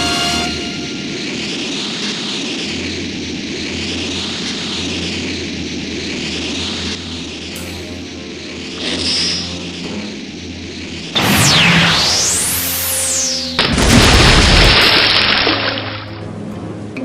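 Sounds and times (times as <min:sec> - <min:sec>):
music: 0:00.0 - 0:01.0, 0:07.6 - 0:10.7, 0:15.2 - 0:17.0
sweeping phasing hiss: 0:00.0 - 0:13.8.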